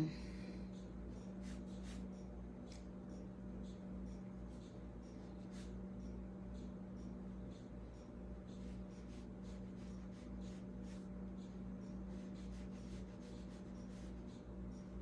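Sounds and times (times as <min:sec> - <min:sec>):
steady low hum: 0:00.0 - 0:15.0
paintbrush stroking on paper: 0:08.6 - 0:11.1, 0:12.1 - 0:14.3.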